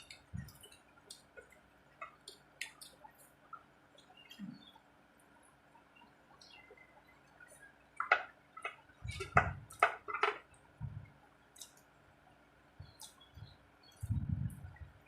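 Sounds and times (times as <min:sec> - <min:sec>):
soft low thumps: 0:10.8 - 0:11.1, 0:12.8 - 0:15.0.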